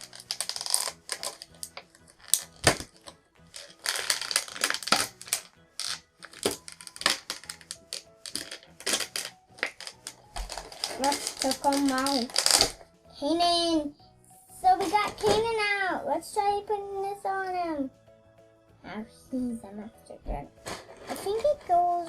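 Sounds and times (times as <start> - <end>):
plastic packaging crinkling: 0.0 - 12.9, 20.6 - 21.8.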